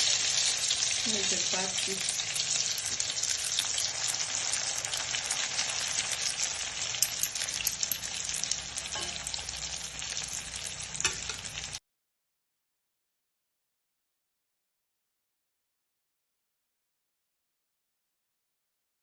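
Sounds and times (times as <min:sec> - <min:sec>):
oil sizzling and crackling: 0:00.0 - 0:11.8.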